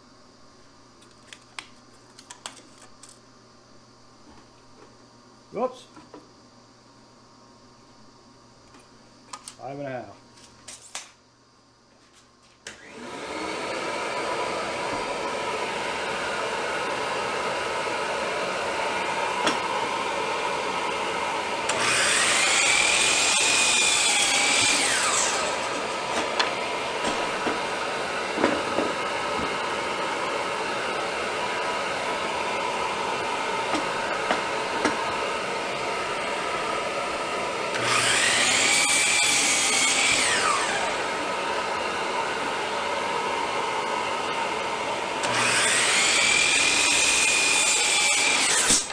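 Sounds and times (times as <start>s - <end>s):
miter saw motor whine: 12.7s - 48.9s
boards knocking: 28.4s - 29.0s.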